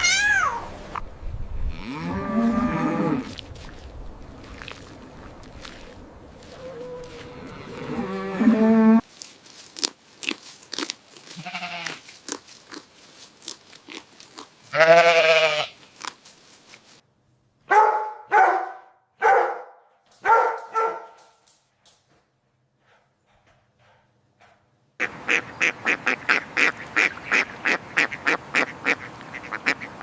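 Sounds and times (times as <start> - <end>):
farm animal calls: 6.4 - 9.0, 25.0 - 30.0
crunching chewing clicks: 9.1 - 14.7, 15.8 - 16.8.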